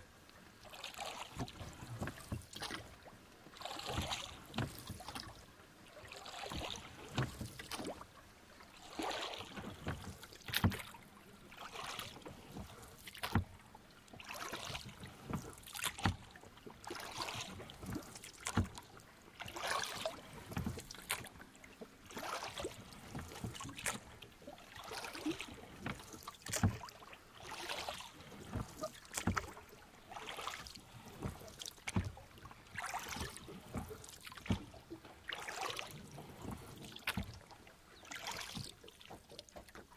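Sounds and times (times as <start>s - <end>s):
oars splashing in water: 0.0s - 39.9s
oars knocking in oarlocks: 9.7s - 11.0s, 25.8s - 26.9s, 27.8s - 32.2s, 32.8s - 34.8s.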